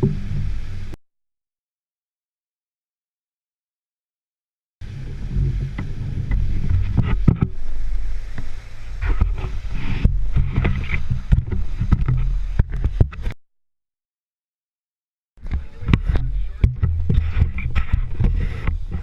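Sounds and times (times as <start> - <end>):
boat engine rumble: 0.0 - 1.0, 4.8 - 13.4, 15.4 - 19.0
knocks and thumps: 9.0 - 13.4, 15.4 - 19.0.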